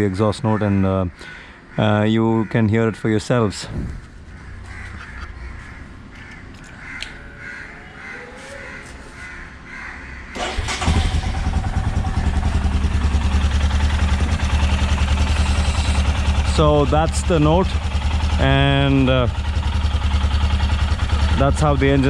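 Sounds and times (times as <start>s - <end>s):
birds calling: 0.0s - 22.0s
motorcycle engine idling: 10.4s - 22.0s
low background hum: 11.8s - 17.9s.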